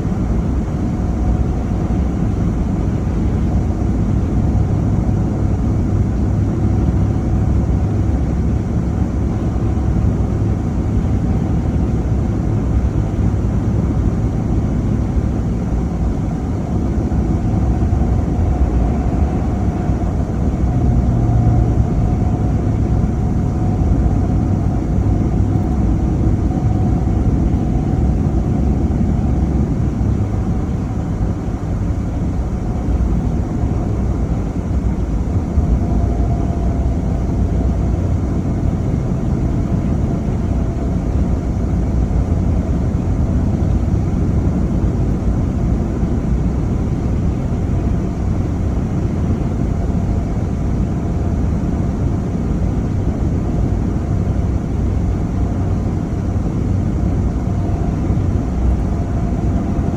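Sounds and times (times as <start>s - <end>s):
car engine and road noise: 0.0s - 59.9s.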